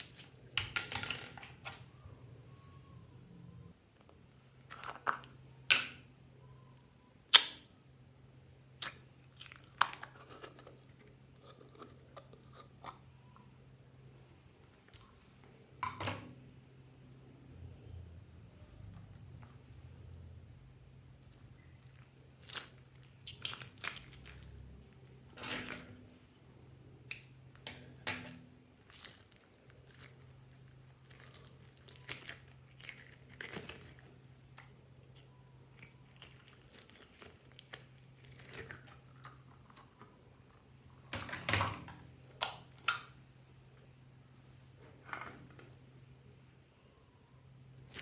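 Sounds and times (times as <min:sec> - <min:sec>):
faint steady hum: 0:00.0 - 0:48.0
slime squishing and popping: 0:21.2 - 0:24.5.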